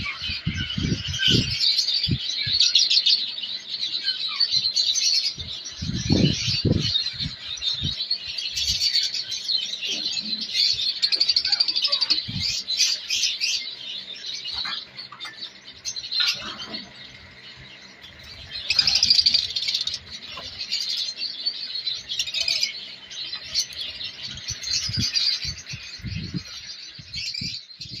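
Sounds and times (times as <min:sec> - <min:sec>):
small cage birds chirping: 0:00.0 - 0:28.0.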